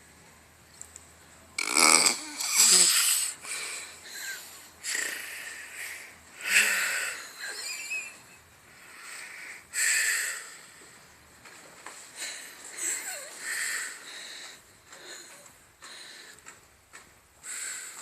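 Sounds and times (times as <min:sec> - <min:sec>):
person snoring: 0:01.6 - 0:07.6.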